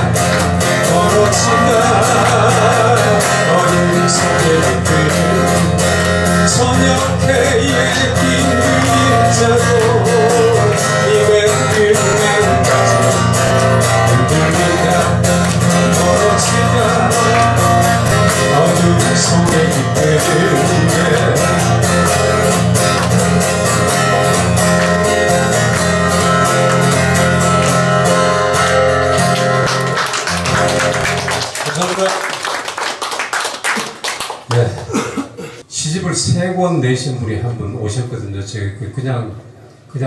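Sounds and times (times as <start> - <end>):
guitar music: 0.0 - 31.6.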